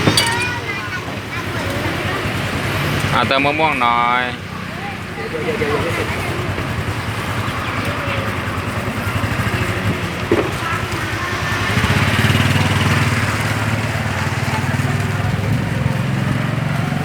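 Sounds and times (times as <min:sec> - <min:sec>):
small engine running: 0:04.4 - 0:17.0.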